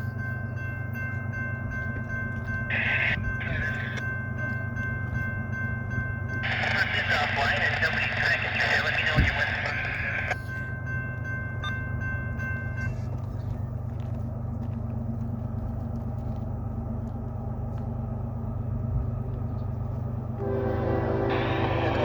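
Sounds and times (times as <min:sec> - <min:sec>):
diesel locomotive rumble: 0:00.0 - 0:22.0
high steady tone: 0:20.4 - 0:22.0.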